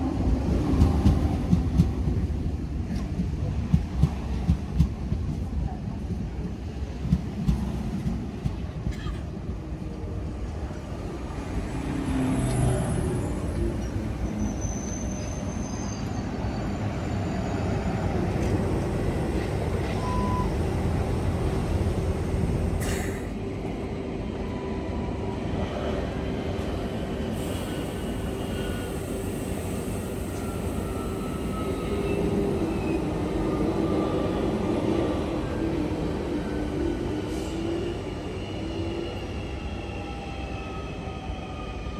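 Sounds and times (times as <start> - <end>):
train wheels rumbling: 0.0 - 9.2.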